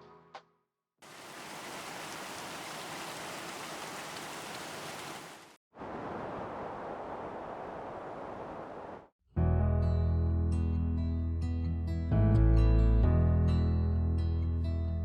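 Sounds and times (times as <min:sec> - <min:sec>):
falling water hissing: 0:01.0 - 0:05.6.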